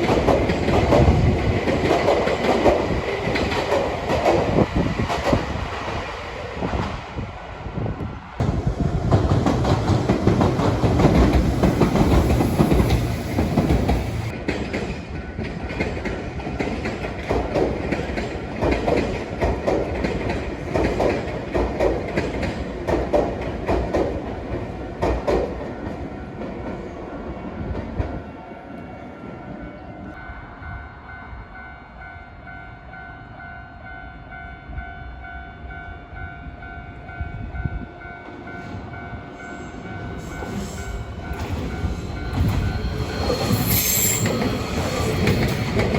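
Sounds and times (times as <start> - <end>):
train wheels clacking on rails: 0.0 - 7.0, 8.4 - 27.0, 38.6 - 45.9.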